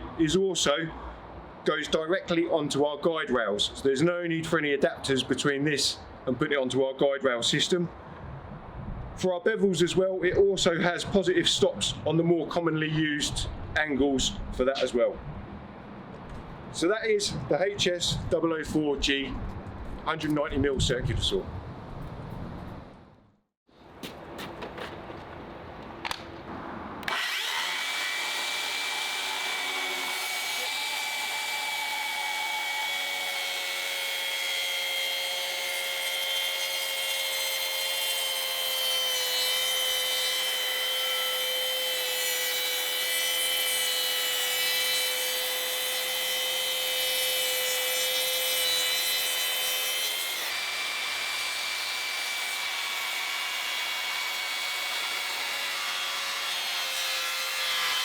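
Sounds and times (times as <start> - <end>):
circular saw cutting wood: 27.0 - 58.0.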